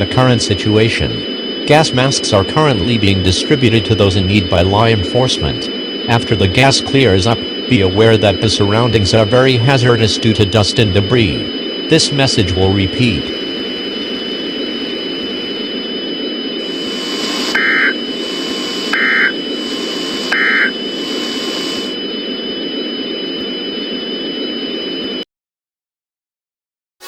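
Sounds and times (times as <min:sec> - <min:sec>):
digital data bursts: 0:00.0 - 0:13.8, 0:16.6 - 0:22.0
steady hiss and hum: 0:00.0 - 0:25.2
high whines: 0:00.0 - 0:25.3.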